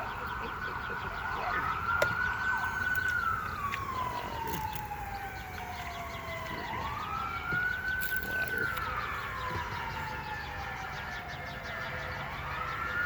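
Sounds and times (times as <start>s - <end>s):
siren wailing: 0.0s - 13.0s.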